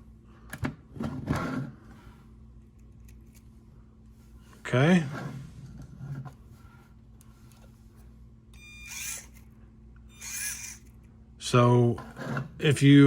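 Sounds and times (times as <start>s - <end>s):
small electric motor whirring: 8.5s - 11.1s.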